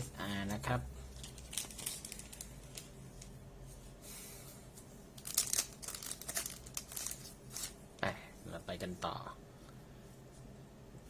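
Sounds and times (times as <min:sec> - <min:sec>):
foil wrapper crinkling and tearing: 0:01.2 - 0:02.9, 0:05.2 - 0:07.8
cards sliding and handled: 0:05.2 - 0:07.8.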